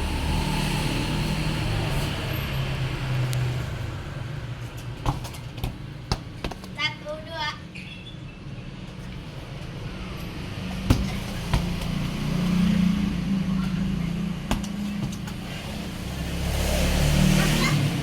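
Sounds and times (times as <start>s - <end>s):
football being kicked: 5.0s - 6.8s, 10.8s - 12.2s, 14.4s - 15.5s
vehicle engine running: 10.6s - 18.0s.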